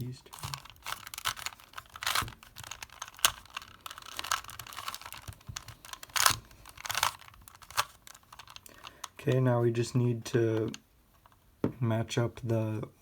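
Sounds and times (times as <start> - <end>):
plastic puzzle cube clicking: 0.3 - 9.2.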